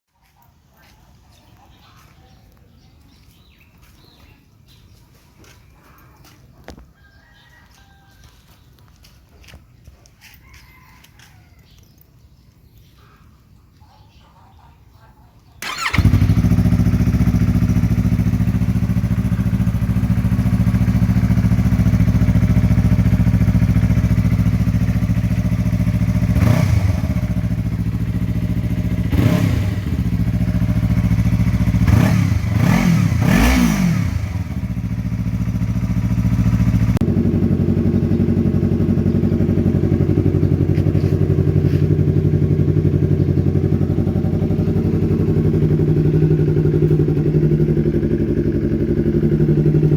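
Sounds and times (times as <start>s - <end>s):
motorcycle engine idling: 15.6s - 49.9s
motorcycle throttle blips: 15.6s - 49.9s.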